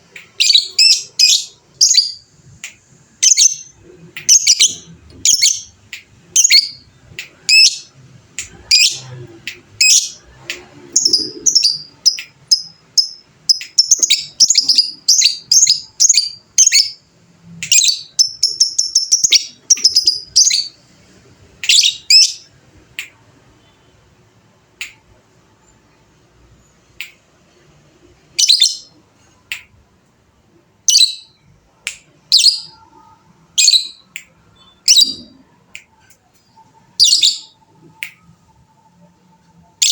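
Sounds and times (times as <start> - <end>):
lovebird chirping: 0.1 - 20.9, 21.6 - 22.5, 28.3 - 29.0, 30.8 - 31.4, 32.2 - 39.9.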